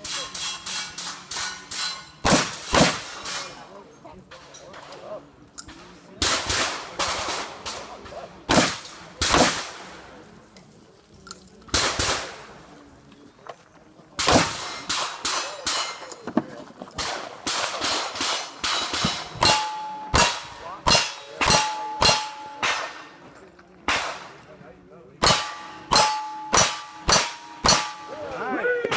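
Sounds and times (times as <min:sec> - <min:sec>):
gunshots: 0:00.1 - 0:03.5, 0:06.2 - 0:10.1, 0:11.7 - 0:12.6, 0:14.2 - 0:16.0, 0:17.0 - 0:23.1, 0:23.8 - 0:24.4, 0:25.2 - 0:28.2
steel targets ringing: 0:18.6 - 0:23.0, 0:25.2 - 0:28.3.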